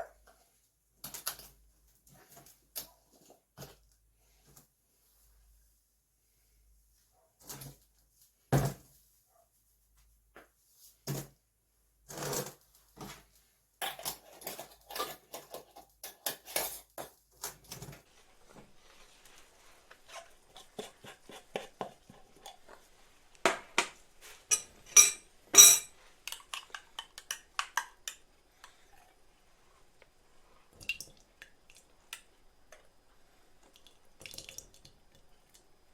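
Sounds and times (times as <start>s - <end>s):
utensils clinking against glass: 24.5s - 25.9s.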